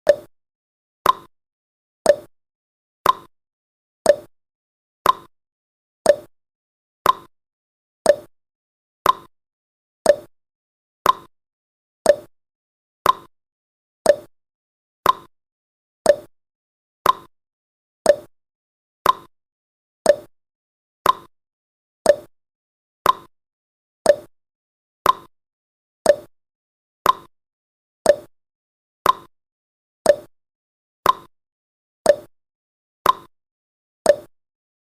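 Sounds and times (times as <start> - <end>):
timer ticking: 0.0 - 0.3, 1.0 - 1.3, 2.1 - 2.3, 3.0 - 3.3, 4.1 - 4.3, 5.0 - 5.3, 6.1 - 6.3, 7.0 - 7.3, 8.1 - 8.3, 9.0 - 9.3, 10.0 - 10.3, 11.0 - 11.3, 12.0 - 12.3, 13.0 - 13.3, 14.0 - 14.3, 15.0 - 15.3, 16.1 - 16.3, 17.0 - 17.3, 18.1 - 18.3, 19.0 - 19.3, 20.1 - 20.3, 21.0 - 21.3, 22.1 - 22.3, 23.0 - 23.3, 24.1 - 24.3, 25.0 - 25.3, 26.0 - 26.3, 27.0 - 27.3, 28.1 - 28.3, 29.0 - 29.3, 30.1 - 30.3, 31.0 - 31.3, 32.1 - 32.3, 33.0 - 33.3, 34.1 - 34.3.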